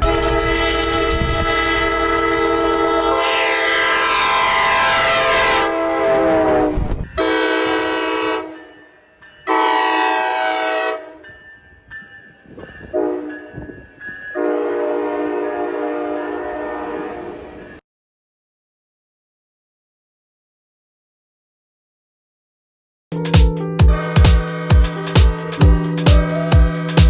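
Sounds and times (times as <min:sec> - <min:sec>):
train air horn blasts: 0:00.0 - 0:08.7, 0:09.5 - 0:11.2, 0:12.9 - 0:13.4, 0:14.4 - 0:17.8, 0:23.2 - 0:27.0.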